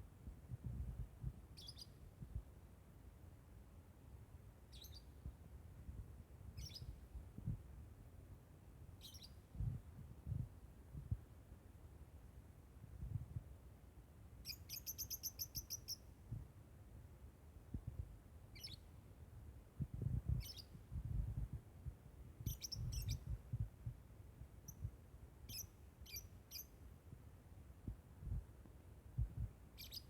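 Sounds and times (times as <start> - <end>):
bird chirping high-pitched: 4.7 - 5.1, 9.0 - 9.4, 14.4 - 16.0, 18.6 - 18.8, 20.4 - 20.7, 22.5 - 23.3, 25.5 - 26.7, 29.8 - 30.0.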